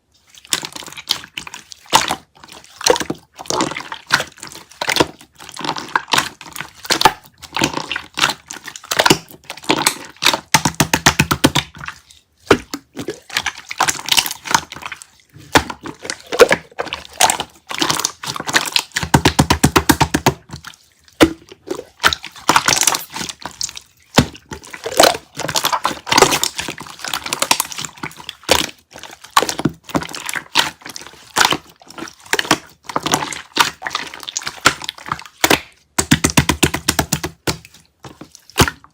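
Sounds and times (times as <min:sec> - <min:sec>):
slime squeezed by hand: 0:11.6 - 0:38.9.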